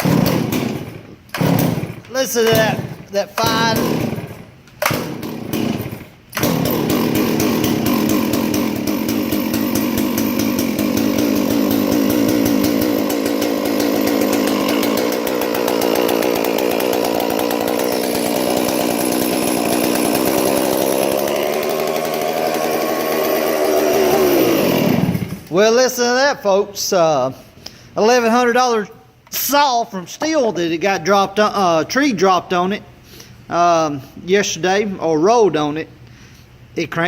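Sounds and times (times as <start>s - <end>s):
chainsaw engine revving: 0.0s - 25.6s.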